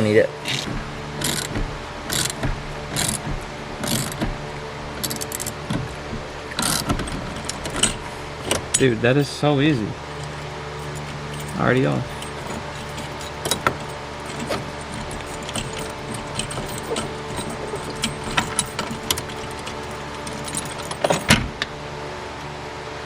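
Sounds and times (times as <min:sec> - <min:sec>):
steady low hum: 0:00.0 - 0:23.0
metallic clicks of tools: 0:00.5 - 0:04.3, 0:05.0 - 0:05.8, 0:06.6 - 0:09.0, 0:10.1 - 0:21.4
loud clatter: 0:00.5 - 0:09.2, 0:09.8 - 0:21.7.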